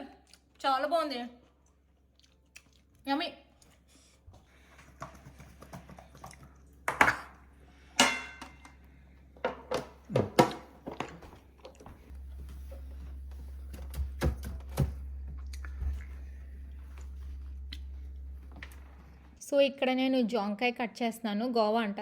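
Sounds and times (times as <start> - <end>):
steady low hum: 3.5 - 19.5
kitchen items knocking and clattering: 4.6 - 8.8, 9.4 - 15.9.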